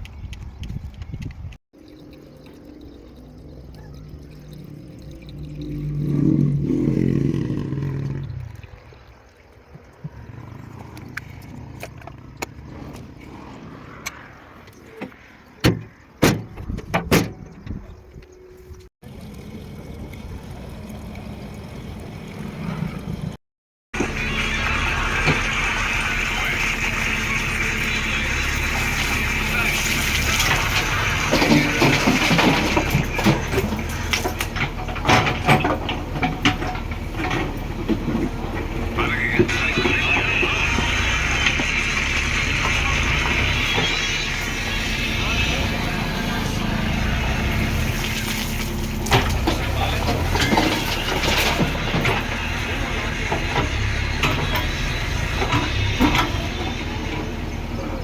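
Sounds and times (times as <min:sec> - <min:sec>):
diesel engine running: 0:01.9 - 0:08.7, 0:24.0 - 0:58.0
sharp metal clanks and knocks: 0:30.4 - 0:38.7.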